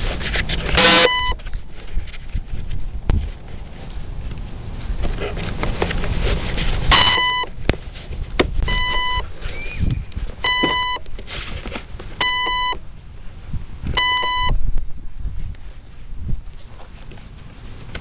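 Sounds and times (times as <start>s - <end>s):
wind rumbling on microphone: 0.0s - 18.0s
electronic beeps: 0.8s - 1.4s, 6.9s - 7.5s, 8.7s - 11.0s, 12.2s - 12.8s, 14.0s - 14.6s.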